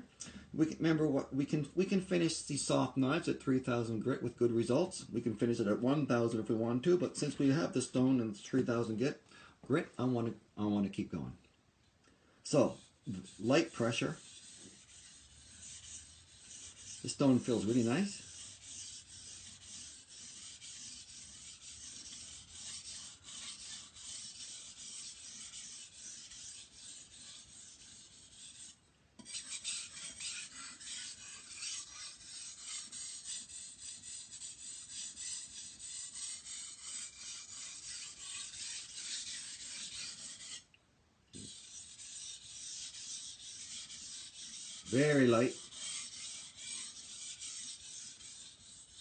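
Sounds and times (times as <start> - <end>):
knife scraping on whetstone: 12.5 - 40.7, 41.4 - 49.0.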